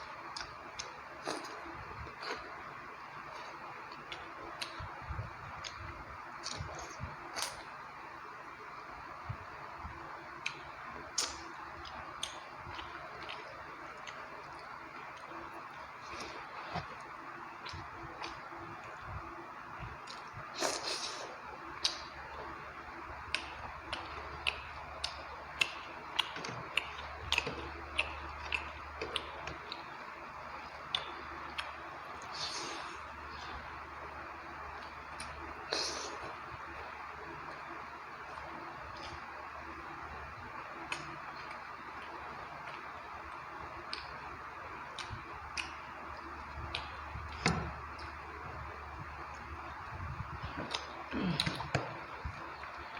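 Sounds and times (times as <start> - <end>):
wet chewing mouth clicks: 23.3 - 30.0, 44.9 - 48.2
steady hiss: 32.0 - 33.6.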